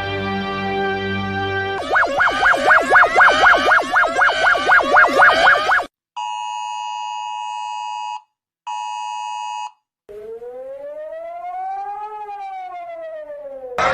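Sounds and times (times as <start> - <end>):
siren wail: 1.8 - 5.9, 10.1 - 13.9
two-tone attention signal: 1.8 - 5.9.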